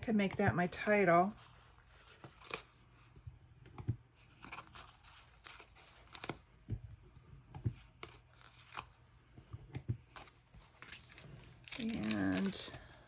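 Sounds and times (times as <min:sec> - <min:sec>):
paper rustling: 0:04.2 - 0:06.4, 0:10.0 - 0:13.0.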